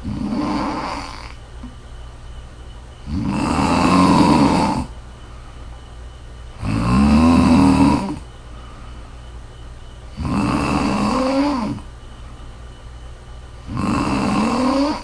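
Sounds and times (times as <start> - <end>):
woman snoring: 0.0 - 1.4, 3.0 - 4.9, 6.6 - 8.3, 10.1 - 11.9, 13.6 - 15.0.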